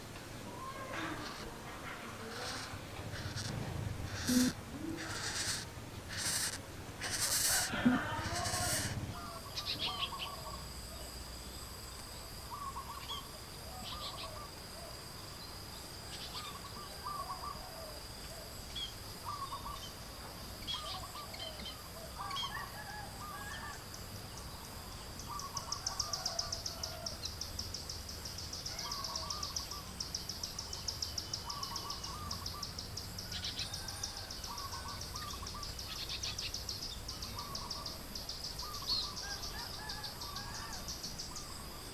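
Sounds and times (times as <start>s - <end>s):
short animal calls: 0.6s - 9.4s.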